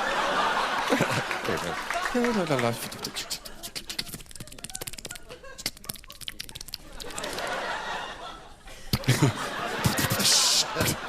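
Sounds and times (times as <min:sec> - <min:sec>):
audience laughter: 0:00.0 - 0:03.3, 0:06.8 - 0:11.0
mouth clicks and snips: 0:02.8 - 0:07.5, 0:09.8 - 0:11.0.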